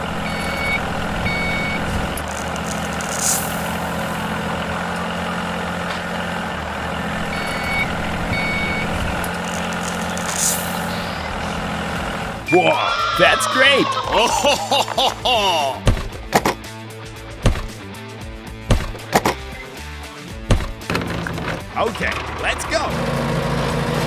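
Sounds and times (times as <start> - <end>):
heavy vehicle engine running: 0.0 - 12.7, 14.9 - 24.0
reversing beeps: 0.2 - 2.2, 7.2 - 9.7.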